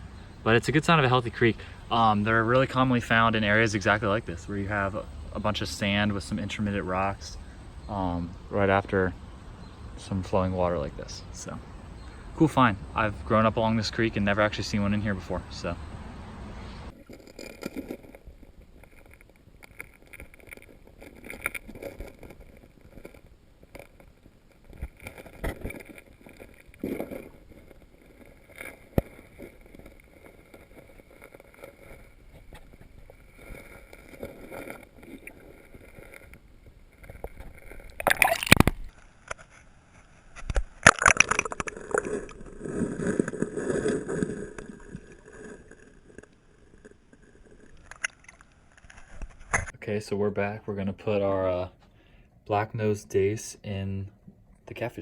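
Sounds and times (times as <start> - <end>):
water splashing: 16.9 - 39.0.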